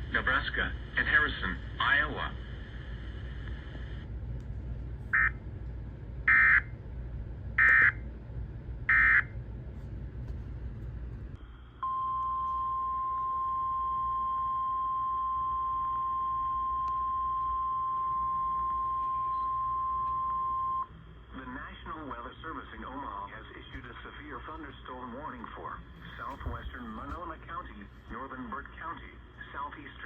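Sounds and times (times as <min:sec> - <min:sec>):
low hum: 0:00.0 - 0:29.8
steady alarm tone: 0:05.2 - 0:05.4, 0:06.2 - 0:06.7, 0:07.6 - 0:08.0, 0:08.9 - 0:09.4, 0:11.8 - 0:21.0.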